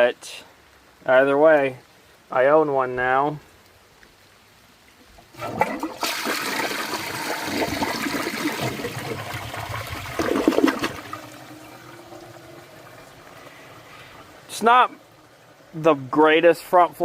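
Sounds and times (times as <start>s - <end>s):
toilet gulp: 5.3s - 13.4s
toilet flushing water rushing: 5.3s - 14.4s.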